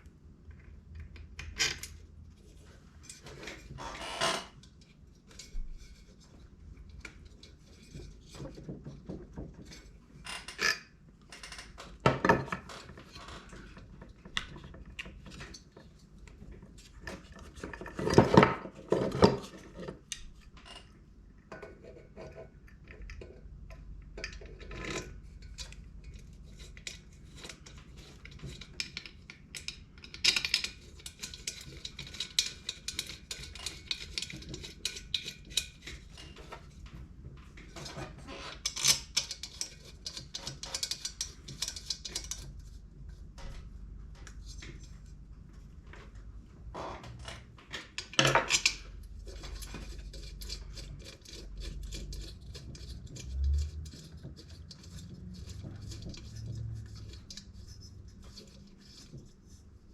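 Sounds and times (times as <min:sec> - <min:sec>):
metal parts clinking and knocking: 0:47.9 - 0:50.6.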